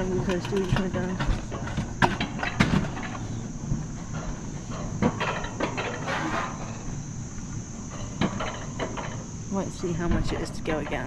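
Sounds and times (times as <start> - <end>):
irregular clicks and knocks: 0.0 - 3.2
high-pitched insect drone: 0.0 - 11.0.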